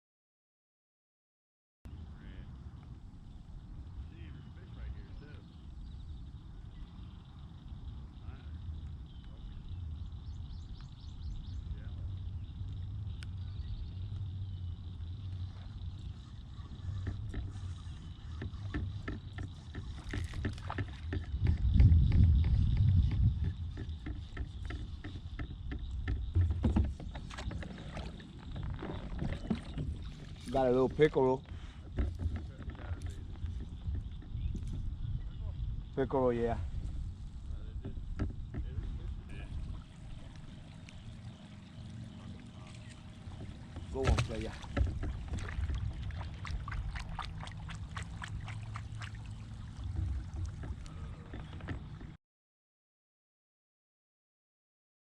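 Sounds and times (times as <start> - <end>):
low steady rumble: 1.9 - 52.0
small water splashes: 15.1 - 21.9, 23.4 - 34.7, 39.2 - 52.1
kayak knocks and clicks: 15.2 - 35.1, 37.8 - 52.2
water dripping and trickling: 39.6 - 52.0.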